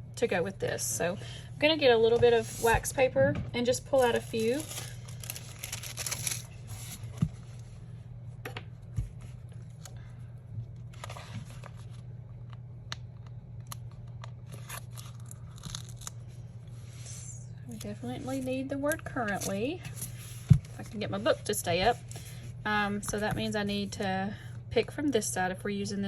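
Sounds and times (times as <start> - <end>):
faint steady hum: 0.0 - 26.0
paper crinkling and tearing: 4.0 - 7.2, 14.4 - 16.4.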